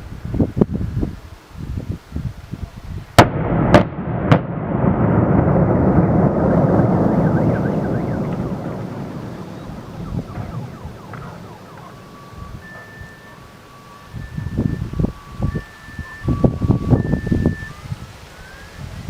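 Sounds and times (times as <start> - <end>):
building collapsing rumble: 3.2 - 13.6
demolition charge blasts: 3.2 - 17.4.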